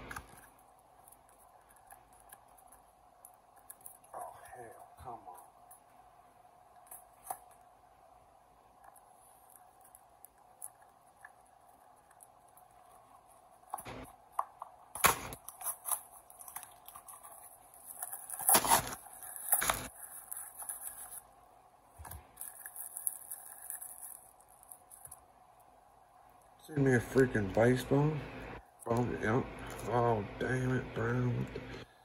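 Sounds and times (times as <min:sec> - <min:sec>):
wrapping crinkling and tearing: 0:15.0 - 0:21.3, 0:22.0 - 0:25.2.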